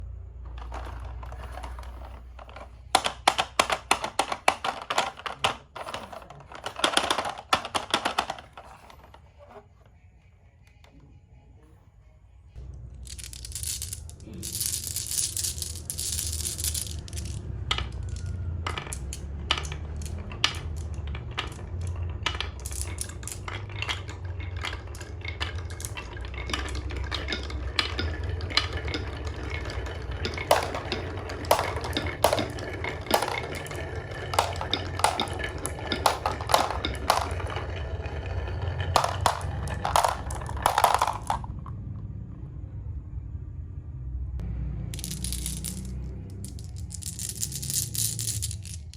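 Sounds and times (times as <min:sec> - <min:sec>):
marbles clicking and clacking: 0:00.4 - 0:09.6, 0:12.6 - 0:41.8, 0:44.9 - 0:48.9
marbles rolling on track: 0:00.4 - 0:09.7, 0:12.6 - 0:42.1, 0:44.8 - 0:48.9
bright rattle: 0:00.4 - 0:09.9, 0:13.0 - 0:41.7.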